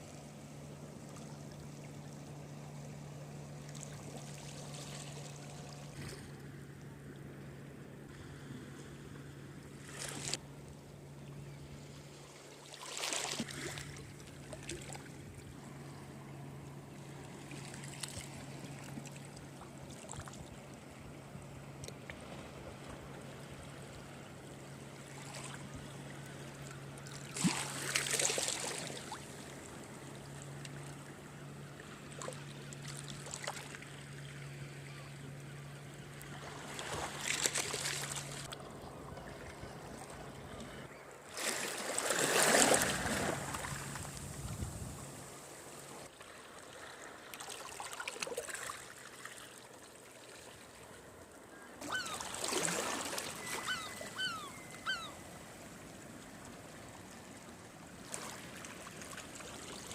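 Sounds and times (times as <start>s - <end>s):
steady low hum: 13.5s - 41.3s.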